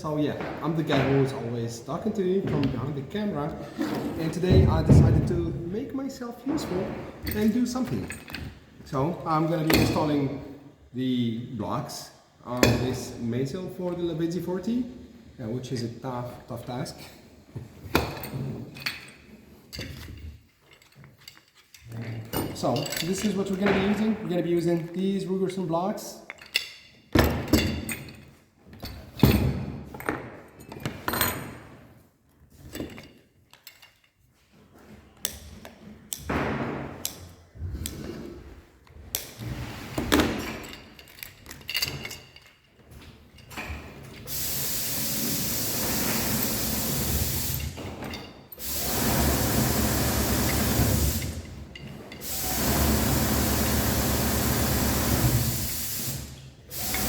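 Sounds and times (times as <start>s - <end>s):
loud hissing whirring noise: 52.3s - 56.2s.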